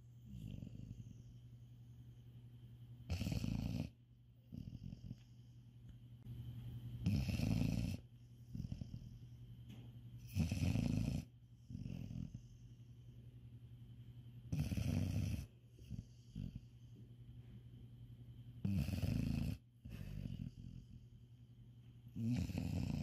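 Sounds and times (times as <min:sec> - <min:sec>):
cat snoring: 0:03.1 - 0:05.2, 0:07.0 - 0:09.1, 0:10.2 - 0:12.4, 0:14.5 - 0:16.6, 0:18.6 - 0:21.0, 0:22.2 - 0:23.0.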